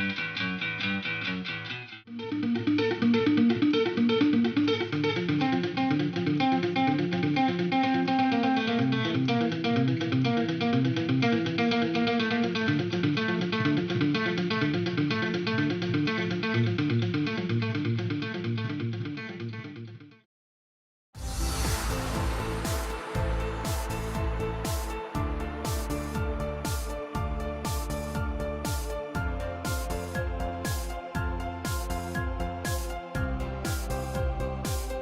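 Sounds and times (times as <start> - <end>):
guitar quick picked notes: 0.0 - 19.9.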